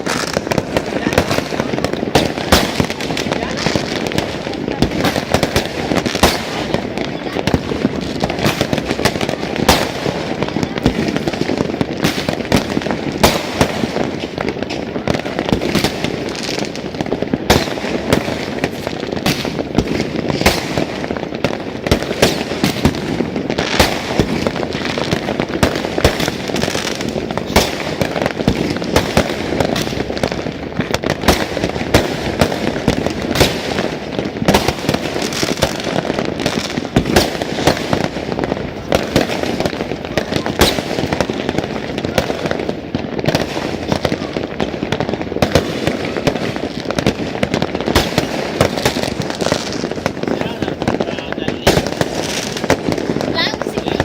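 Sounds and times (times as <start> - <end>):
fireworks bangs and crackles: 0.0 - 54.0
sharp loud firework bangs: 0.0 - 54.0.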